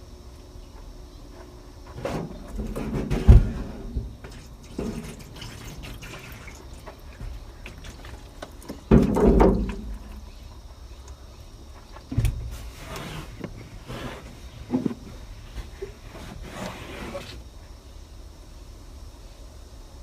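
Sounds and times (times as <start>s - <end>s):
water splashing and dripping: 4.2s - 10.2s.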